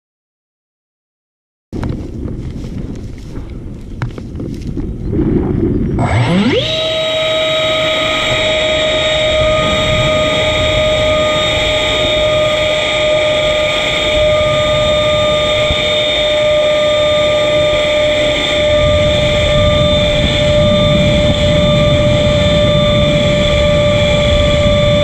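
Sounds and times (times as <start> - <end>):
wind buffeting microphone: 1.7 - 25.0
model plane motor whining: 5.9 - 25.0.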